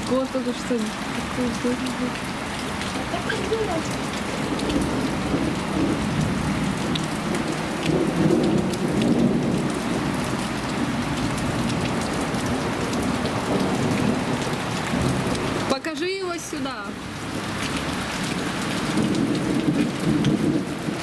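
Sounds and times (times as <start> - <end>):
heavy rain pouring: 0.0 - 21.0
raindrops ticking on surfaces: 0.0 - 21.0
low thunder rumble: 2.3 - 15.7, 18.4 - 21.0.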